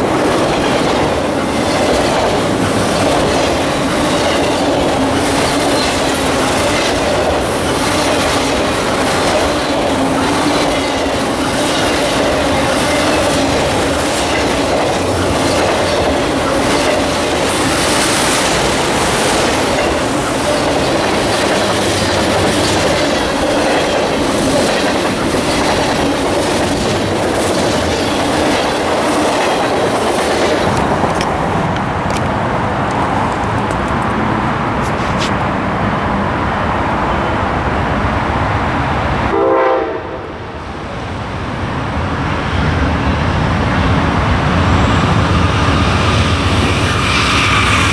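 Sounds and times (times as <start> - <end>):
wheels clacking over rail joints: 0.0 - 35.4
freight train rumbling past: 0.0 - 47.9.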